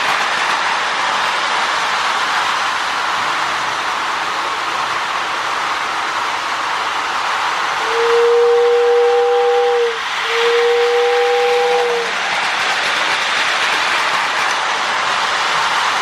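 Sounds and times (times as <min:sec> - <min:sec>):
toy train whirring on track: 0:00.0 - 0:02.6, 0:09.4 - 0:16.0
toy train whistle blowing: 0:07.8 - 0:12.1.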